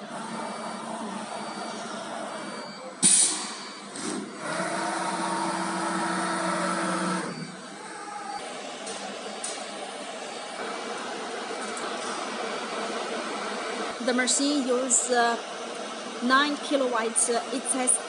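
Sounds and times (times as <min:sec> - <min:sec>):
compressed air blast: 0:03.0 - 0:04.2
router motor whine: 0:04.0 - 0:12.5.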